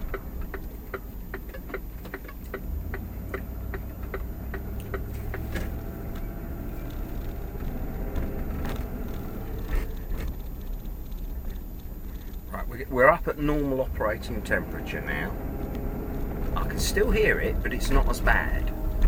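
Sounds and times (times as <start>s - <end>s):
car engine heard from inside: 0.0s - 19.0s
regular ticking: 0.0s - 19.0s.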